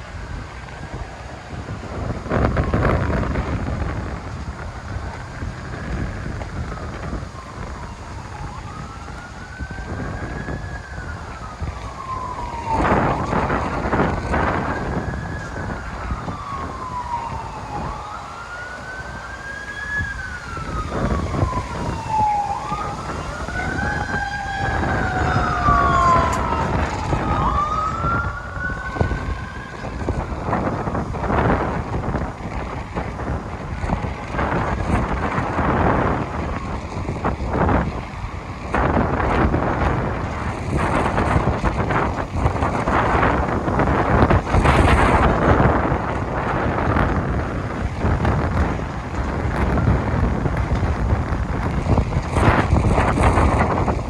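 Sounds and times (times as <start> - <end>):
emergency siren wailing: 0.0 - 54.0
second siren wailing: 0.0 - 54.0
loud rushes of noise: 1.6 - 54.0.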